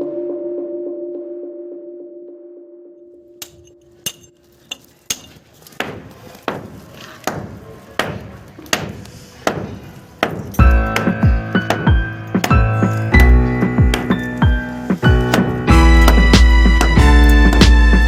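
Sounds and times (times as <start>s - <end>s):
hammer blows ringing: 3.4s - 18.0s.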